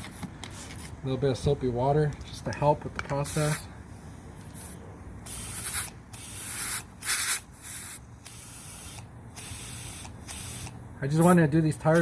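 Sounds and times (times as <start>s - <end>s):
spray bottle hissing sprays: 3.2s - 3.6s, 4.4s - 12.0s.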